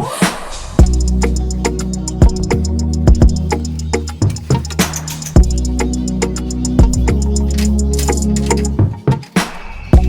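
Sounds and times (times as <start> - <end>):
hi-hat ticks: 0.8 - 8.8
bass line: 0.8 - 9.0
drum beat: 0.8 - 10.0.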